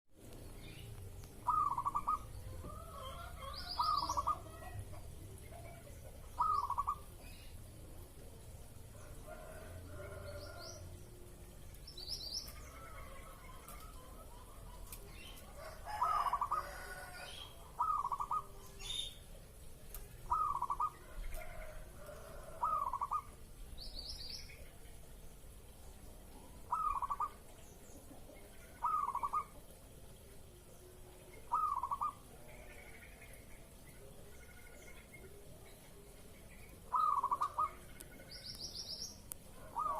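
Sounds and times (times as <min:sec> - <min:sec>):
small bird chirping: 0:00.3 - 0:02.4
dove cooing: 0:01.4 - 0:07.2, 0:12.5 - 0:19.1, 0:20.2 - 0:23.5, 0:26.5 - 0:29.7, 0:31.3 - 0:33.2, 0:36.8 - 0:38.5, 0:39.5 - 0:39.9.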